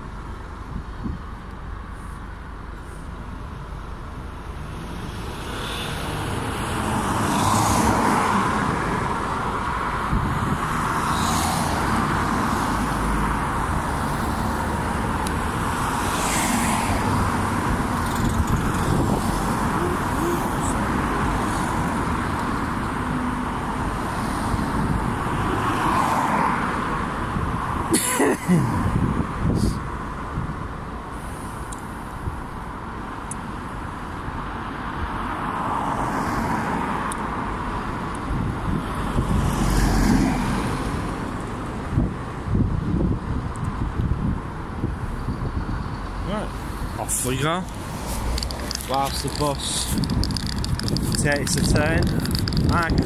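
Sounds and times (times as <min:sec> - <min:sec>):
wind rumble on microphone: 0:00.0 - 0:01.5, 0:05.0 - 0:27.9, 0:28.6 - 0:31.0, 0:37.8 - 0:47.0, 0:47.7 - 0:53.0
cars passing: 0:00.0 - 0:53.0.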